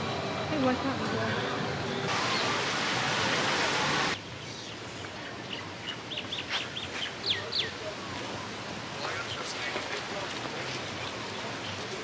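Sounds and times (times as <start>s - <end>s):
birds chirping: 4.3s - 12.0s.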